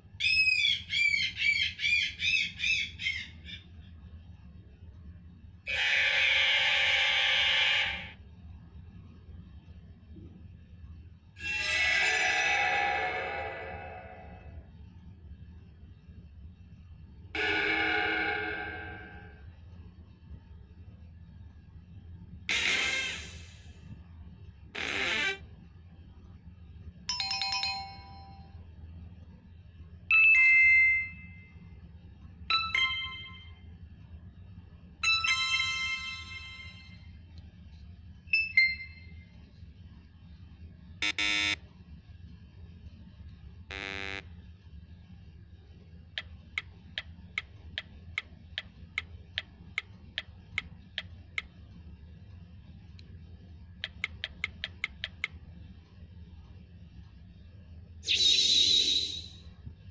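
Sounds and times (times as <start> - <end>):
low steady hum: 0.0 - 59.9
bright chiming dings: 27.1 - 28.6, 30.1 - 31.5, 35.0 - 37.0
short buzzes: 41.0 - 41.6, 43.7 - 44.2
sharp ticks: 53.8 - 55.4.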